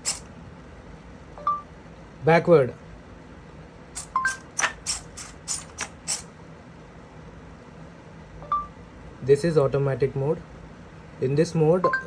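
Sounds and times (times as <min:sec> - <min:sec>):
robot clicking as it walks: 0:04.3 - 0:06.2.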